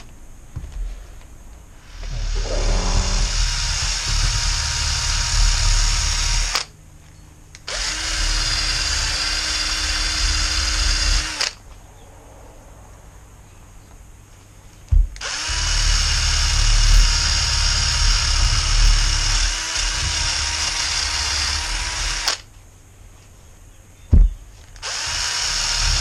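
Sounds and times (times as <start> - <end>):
electric drill running: 1.9 - 6.7, 7.7 - 11.6, 15.2 - 22.4, 24.8 - 26.0.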